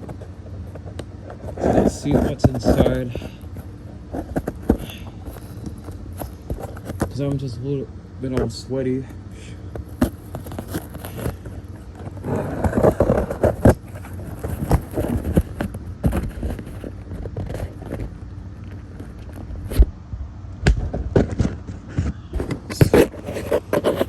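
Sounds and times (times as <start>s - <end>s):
package being opened: 9.8s - 18.1s.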